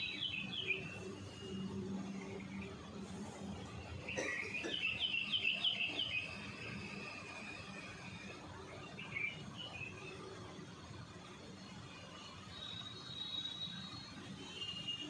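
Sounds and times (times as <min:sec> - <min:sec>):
bird chirping: 0:00.0 - 0:02.7, 0:04.1 - 0:06.7.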